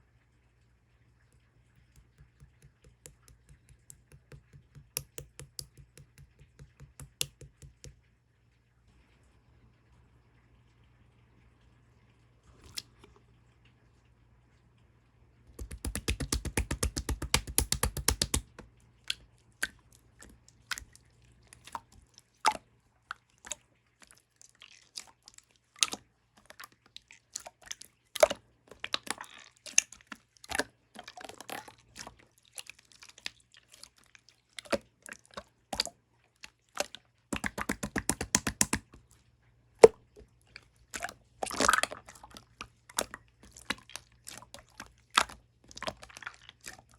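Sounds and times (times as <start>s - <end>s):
slime clicking popping and squishing: 1.8s - 8.0s, 15.6s - 19.8s, 37.3s - 39.0s.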